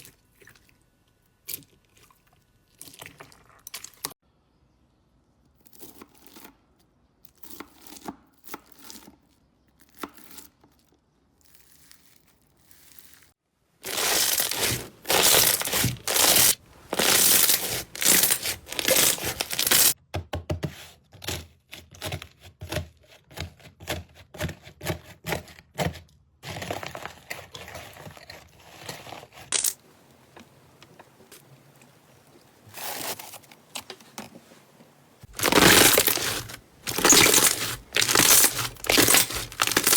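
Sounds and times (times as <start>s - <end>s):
slime crackling when pressed: 13.9s - 20.0s, 35.3s - 39.9s.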